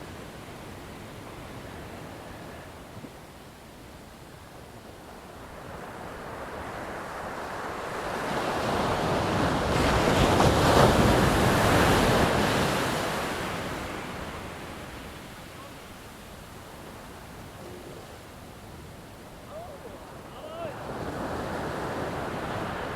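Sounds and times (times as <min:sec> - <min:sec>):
ocean wave rushing in: 0:19.0 - 0:22.9.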